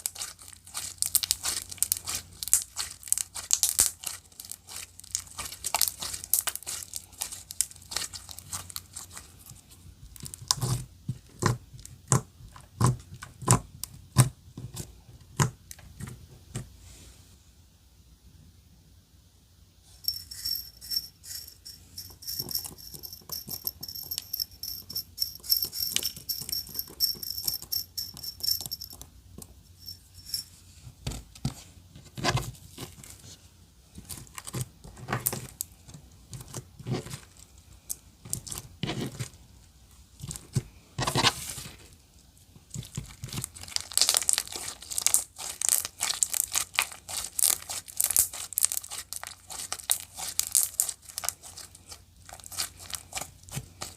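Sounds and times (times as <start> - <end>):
slime squishing with wet clicks: 42.8 - 53.9.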